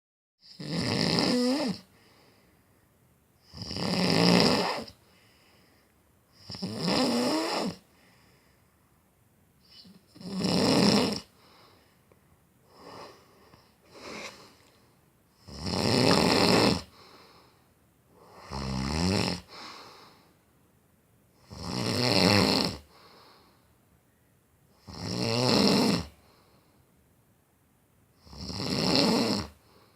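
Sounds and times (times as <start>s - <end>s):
loud rasping snores: 0.4s - 1.9s, 3.4s - 5.0s, 6.4s - 7.8s, 9.7s - 11.3s, 15.4s - 17.0s, 18.2s - 19.7s, 21.4s - 22.9s, 24.8s - 26.2s, 28.2s - 29.6s
faint breathing: 1.9s - 3.0s, 5.0s - 6.4s, 7.8s - 10.0s, 11.3s - 15.1s, 16.9s - 18.4s, 19.4s - 20.5s, 22.8s - 23.8s, 26.1s - 27.0s, 29.6s - 29.9s.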